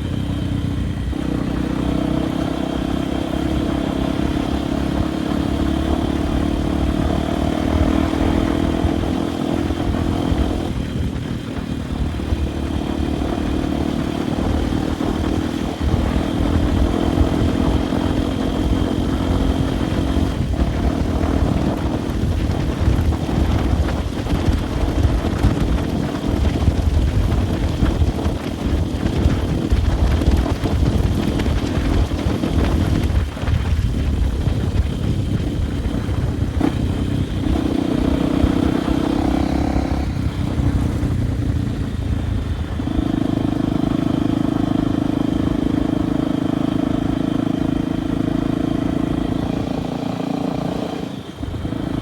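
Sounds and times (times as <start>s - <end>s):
motorcycle engine running: 0.0s - 52.0s
wind on microphone: 0.0s - 52.0s.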